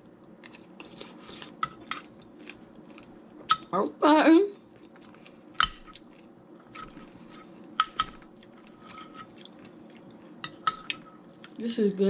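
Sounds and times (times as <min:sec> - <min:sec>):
close-up chewing: 0:04.7 - 0:11.6
spoon clinking against bowl: 0:10.4 - 0:11.0.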